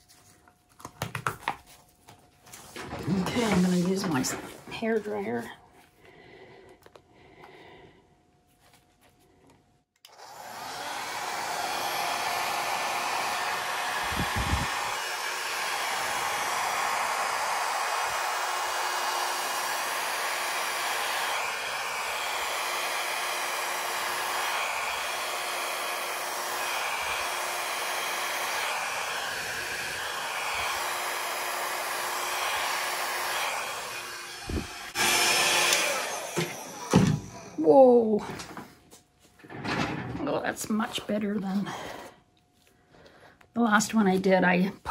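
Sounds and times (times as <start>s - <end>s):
hair dryer blowing: 2.8s - 5.5s, 10.0s - 38.7s.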